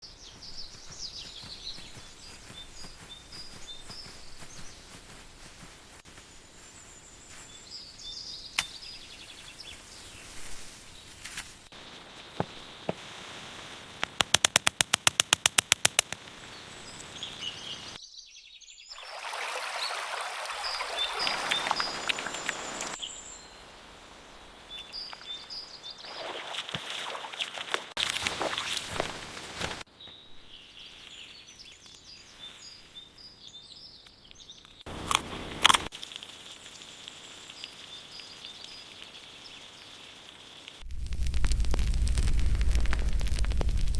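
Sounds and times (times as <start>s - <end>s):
birds chirping: 0.0s - 13.0s, 16.0s - 29.1s, 29.8s - 35.9s
rapid sharp clicks: 14.0s - 16.2s.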